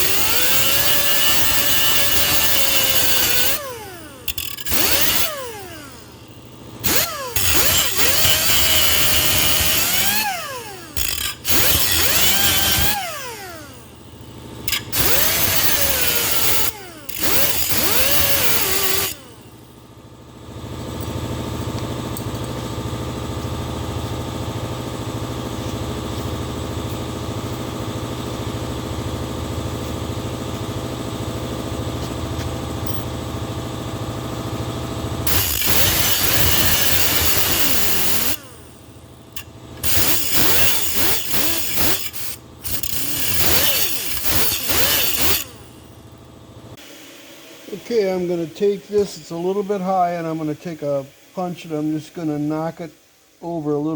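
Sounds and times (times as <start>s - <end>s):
cutoff wheel tool spinning: 0.0s - 19.5s, 35.2s - 45.9s
steady machine hum: 0.0s - 53.8s.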